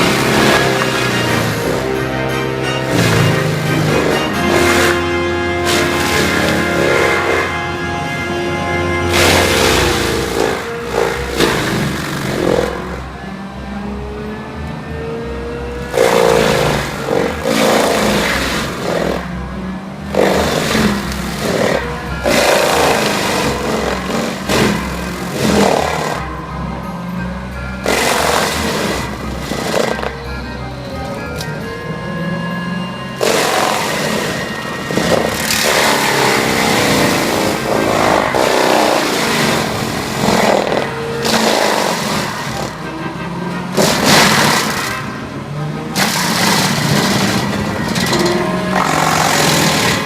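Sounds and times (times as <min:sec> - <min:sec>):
diesel engine running hard: 0:00.0 - 0:50.0
mulcher shredding wood: 0:00.0 - 0:50.0.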